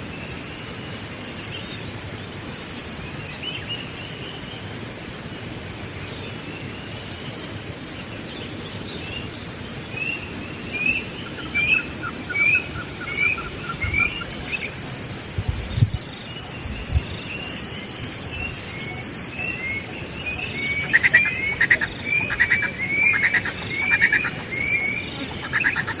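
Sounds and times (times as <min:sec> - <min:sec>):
raspy bird call: 0:20.2 - 0:26.0.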